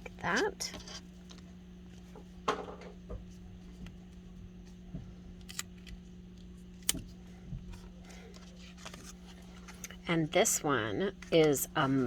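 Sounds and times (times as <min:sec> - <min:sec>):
steady low hum: 0:00.0 - 0:12.0
paper rustling: 0:08.1 - 0:09.9.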